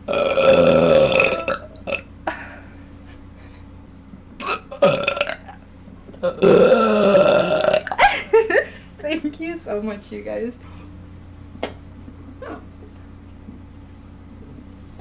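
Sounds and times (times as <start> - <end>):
person burping: 0.1 - 2.1, 4.4 - 5.6, 6.2 - 8.1.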